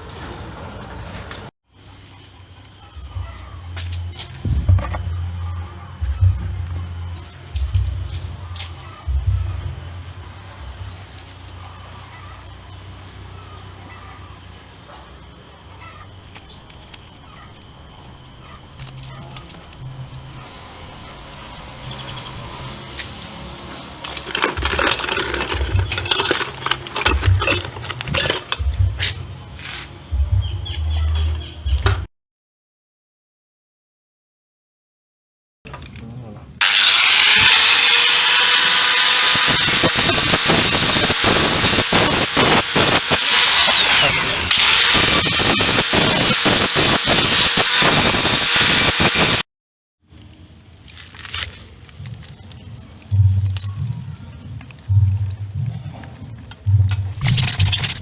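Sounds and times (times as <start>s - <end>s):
electric tool whining and rattling: 2.6s - 12.0s, 12.8s - 30.4s, 36.6s - 49.5s
low thumps: 4.3s - 8.4s, 9.1s - 11.0s, 53.1s - 58.0s
metallic clinks and knocks: 24.1s - 28.9s.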